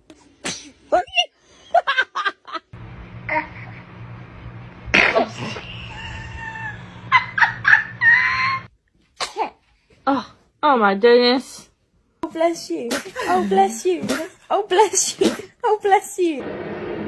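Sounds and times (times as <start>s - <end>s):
baby sneezing: 0.3s - 0.8s, 5.0s - 5.6s, 9.2s - 9.6s, 12.4s - 15.6s
baby vocal sounds: 12.3s - 16.0s.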